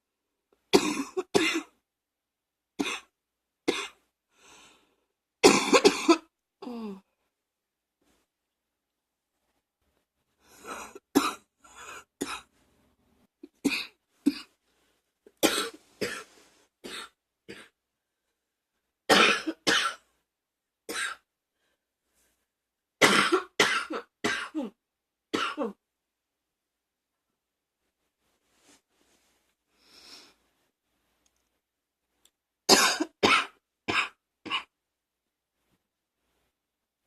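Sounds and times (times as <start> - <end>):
person coughing harshly: 0.7 - 1.7, 5.4 - 6.3, 10.7 - 12.5, 13.5 - 14.5, 15.4 - 17.8, 19.1 - 20.0, 20.9 - 21.2, 23.0 - 25.8, 32.7 - 34.8.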